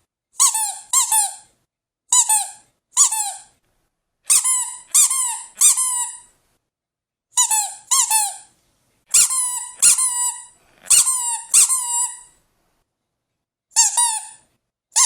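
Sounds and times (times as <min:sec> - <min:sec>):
squeaky dog toy squeaking: 0:00.4 - 0:01.5, 0:02.1 - 0:03.6, 0:04.3 - 0:06.3, 0:07.4 - 0:08.5, 0:09.1 - 0:12.4, 0:13.7 - 0:14.4.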